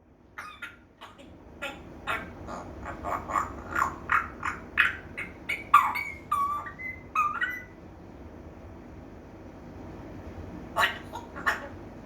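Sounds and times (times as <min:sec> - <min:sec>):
parrot calling: 0:00.4 - 0:07.8, 0:10.7 - 0:11.9.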